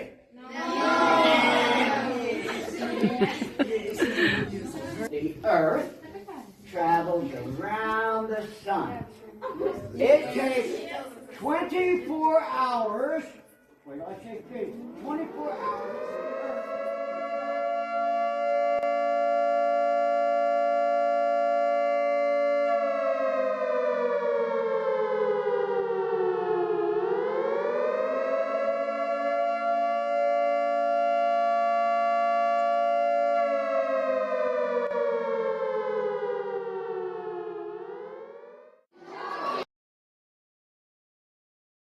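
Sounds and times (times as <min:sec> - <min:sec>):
air-raid siren wailing: 0:14.6 - 0:38.9.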